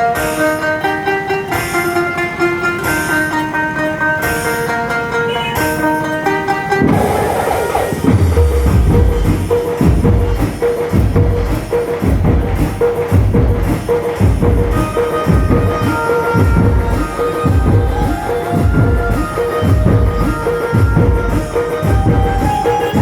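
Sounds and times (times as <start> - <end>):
high melody line: 0.0 - 23.0
heavy drum strokes: 6.7 - 23.0.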